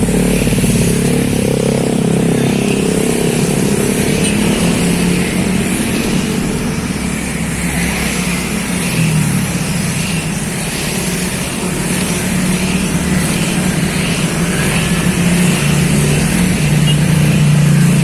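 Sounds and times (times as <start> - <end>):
vehicle engine droning: 0.0 - 18.0.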